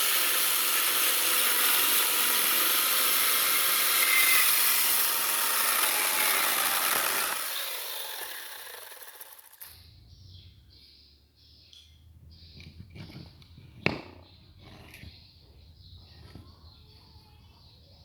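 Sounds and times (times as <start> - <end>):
power tool cutting wood: 0.0 - 9.8.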